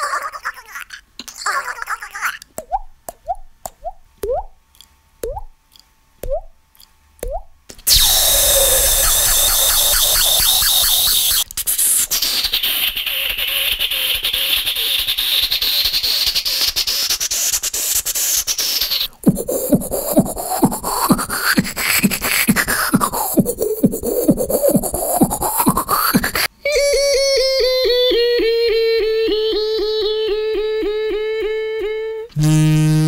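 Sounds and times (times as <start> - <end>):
beatboxing vocal effects: 7.3 - 28.6.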